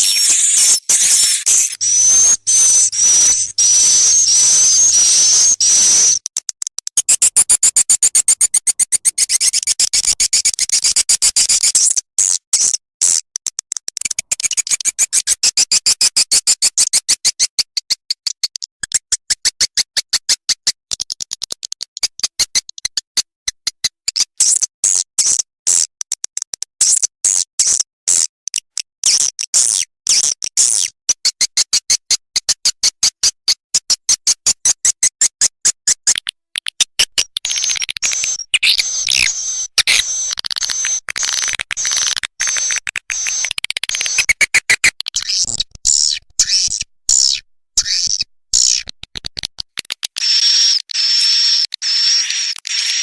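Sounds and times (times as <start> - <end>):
bird twittering chirps: 0.0 - 6.2, 37.5 - 42.6
stuttering click-like trills: 0.0 - 12.0, 36.0 - 53.0.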